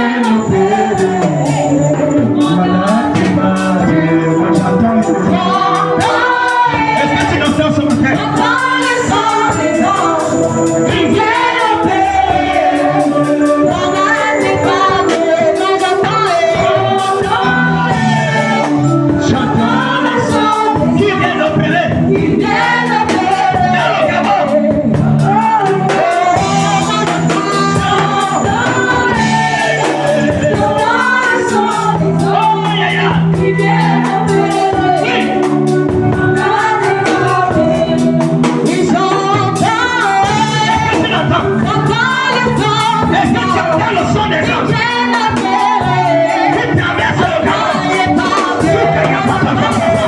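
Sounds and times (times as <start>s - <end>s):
band with steady beat: 0.0s - 50.0s
choir singing gospel: 0.0s - 50.0s.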